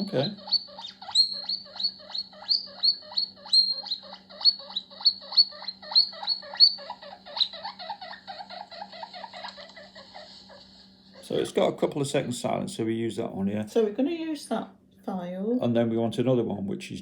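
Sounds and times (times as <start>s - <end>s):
guinea pig squeaking through phone: 0.0s - 11.6s.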